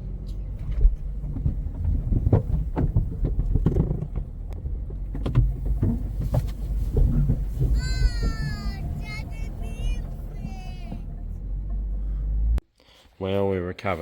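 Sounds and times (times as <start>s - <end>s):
vehicle driving rumble: 0.0s - 12.6s
knocks and clunks: 0.4s - 12.6s.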